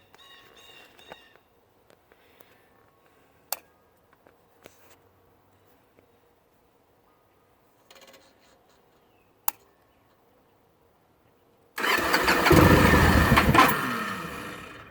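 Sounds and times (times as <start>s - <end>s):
motorcycle engine cranking: 11.8s - 14.9s.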